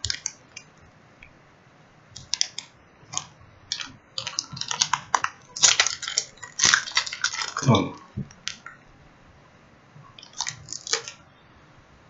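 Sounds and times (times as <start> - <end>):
plastic wrapper crackling: 2.2 - 7.8, 10.2 - 11.2.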